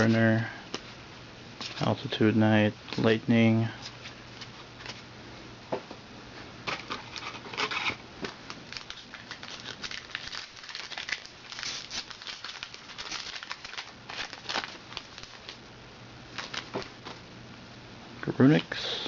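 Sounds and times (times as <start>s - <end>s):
foil wrapper crinkling and tearing: 6.7s - 15.6s, 16.3s - 17.2s
paper cards rustling: 6.7s - 15.6s, 16.4s - 17.2s.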